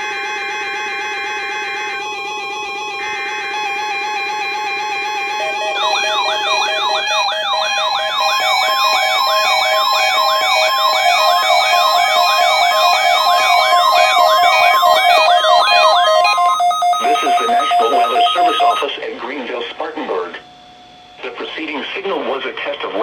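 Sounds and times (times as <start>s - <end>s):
warbling siren-like alarm sweeps: 2.4s - 18.8s
steady beeping tones: 4.9s - 20.2s.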